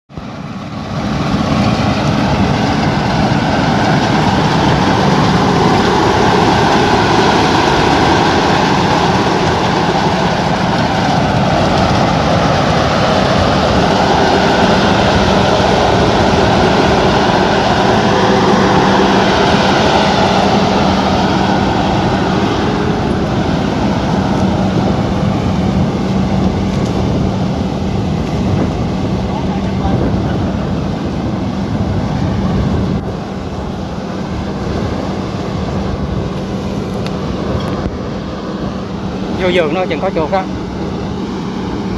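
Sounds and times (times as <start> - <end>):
engine running loudly: 0.1 - 41.9.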